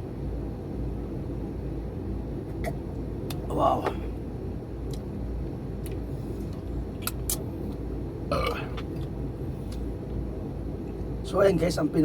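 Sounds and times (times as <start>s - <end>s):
steady low rumble: 0.0s - 12.0s
burp: 8.3s - 8.8s.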